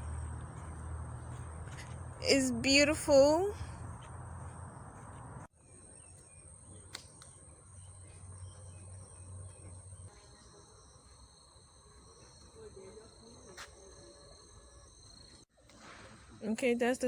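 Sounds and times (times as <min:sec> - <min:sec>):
lower insect tone: 0:03.8 - 0:15.5.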